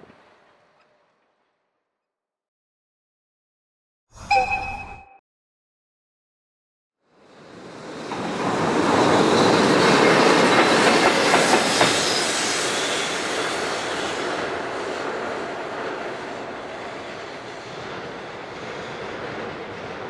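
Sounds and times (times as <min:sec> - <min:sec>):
train wheels rumbling on rails: 0:07.4 - 0:20.0.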